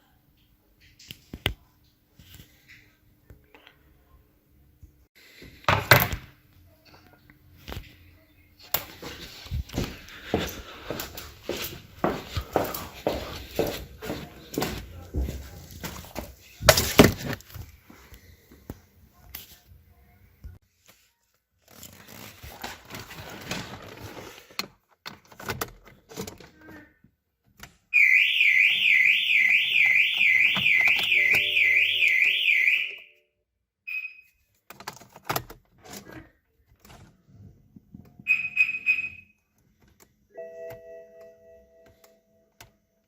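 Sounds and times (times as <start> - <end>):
car alarm siren warbling: 28.0 - 33.2, 38.3 - 39.2
short beep: 29.8 - 33.2, 38.3 - 39.3.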